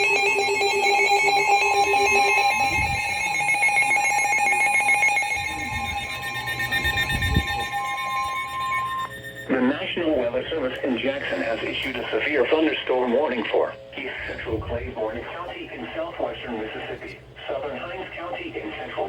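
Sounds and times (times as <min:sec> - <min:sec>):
rapid pulsing electronic beeps: 0:00.0 - 0:10.2
steady alarm tone: 0:00.0 - 0:16.8.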